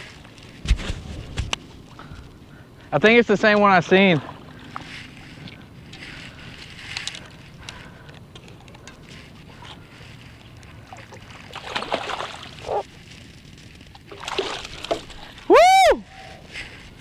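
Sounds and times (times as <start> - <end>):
water sloshing and lapping: 0.0 - 15.5
water splashing: 9.5 - 13.2, 13.8 - 15.5.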